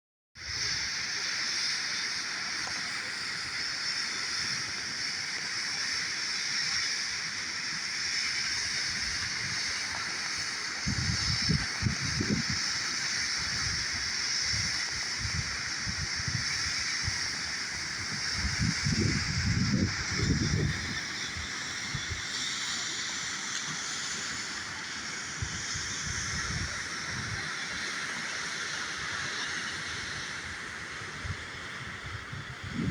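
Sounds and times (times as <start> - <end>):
low rumbling gusts: 32.0 - 32.9.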